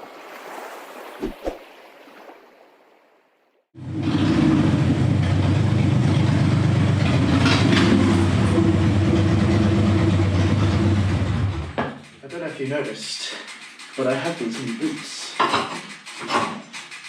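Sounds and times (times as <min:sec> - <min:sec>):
motorcycle engine running: 0:03.8 - 0:11.8.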